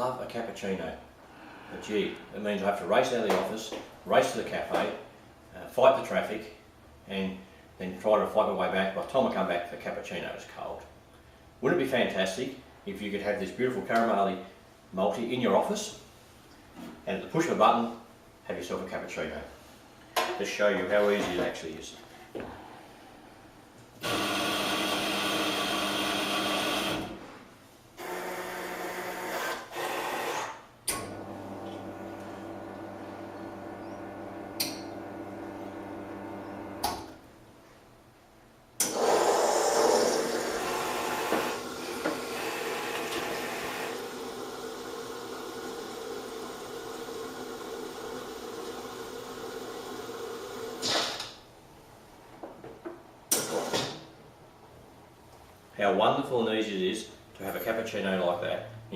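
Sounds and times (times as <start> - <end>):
coffee machine motor whirring: 24.0 - 27.2, 38.8 - 50.8.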